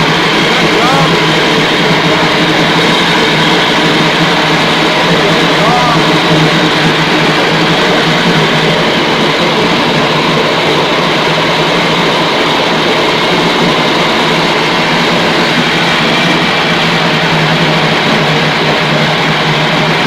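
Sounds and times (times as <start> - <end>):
meat grinder motor hum: 0.0 - 20.0.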